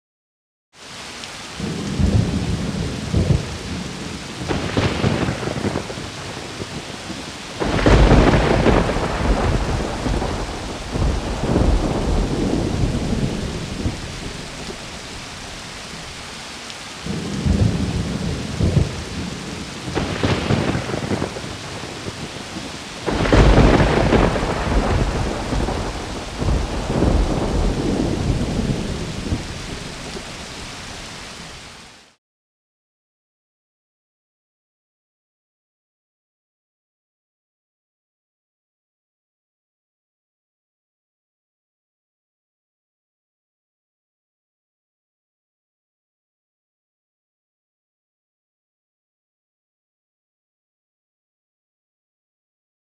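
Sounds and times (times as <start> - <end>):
steady rain: 0.8 - 32.2
thunder rumbling: 1.6 - 16.1, 17.0 - 30.9.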